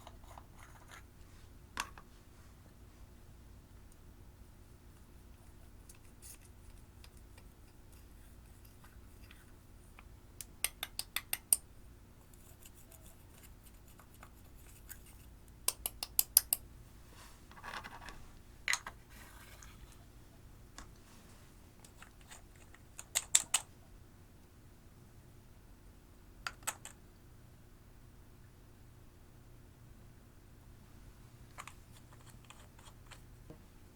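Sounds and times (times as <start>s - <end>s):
small hard objects clicking: 21.9s - 23.7s.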